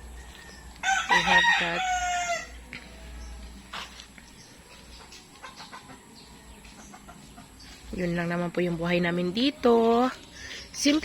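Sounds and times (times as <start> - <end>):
chickens clucking: 0.0 - 8.4.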